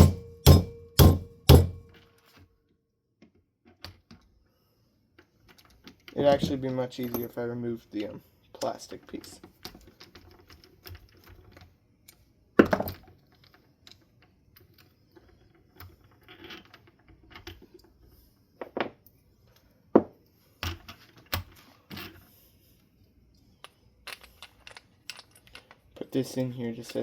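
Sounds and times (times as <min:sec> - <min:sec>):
clicks and knocks of motor parts: 0:23.6 - 0:27.0.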